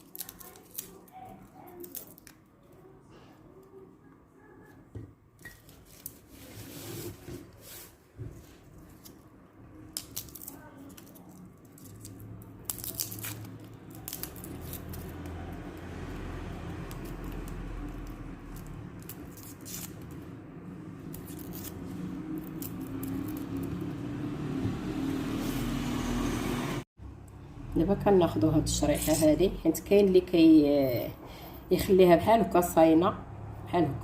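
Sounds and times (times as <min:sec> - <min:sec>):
clicks and rustles of peeling garlic: 0:00.0 - 0:02.5, 0:09.9 - 0:20.2.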